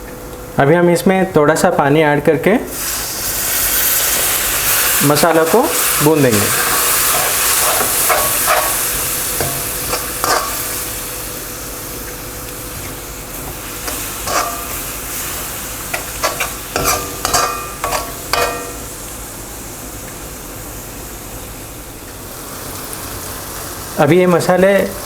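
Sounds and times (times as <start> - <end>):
spice masala sizzling in a pan: 2.7 - 25.0
spatula scraping and knocking pan: 6.4 - 10.6, 13.4 - 14.8, 15.9 - 18.8.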